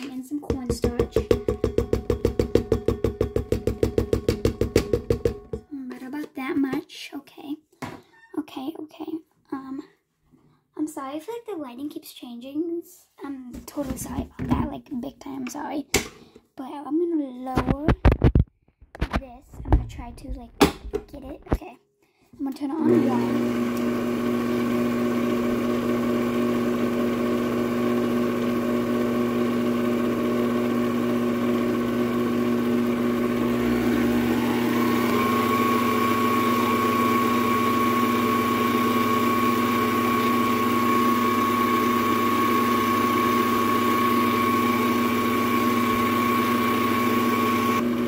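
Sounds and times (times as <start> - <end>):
mixer beating thick slime: 0.0 - 5.6, 22.7 - 48.0
electric mixer motor running: 1.0 - 5.6, 22.8 - 48.0.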